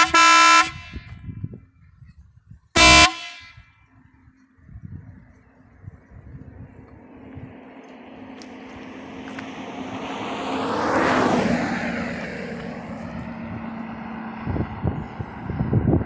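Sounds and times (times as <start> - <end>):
vehicle passing by: 5.3 - 16.0.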